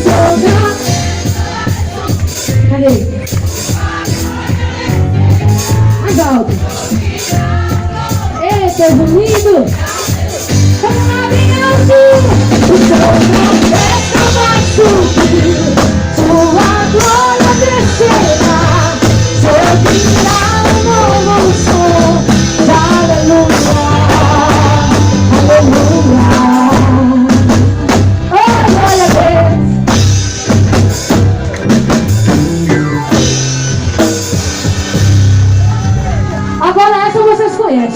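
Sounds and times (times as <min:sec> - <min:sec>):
drum kit beat: 0:00.0 - 0:37.0
worship band playing: 0:00.0 - 0:37.9
person singing melody: 0:10.8 - 0:27.5.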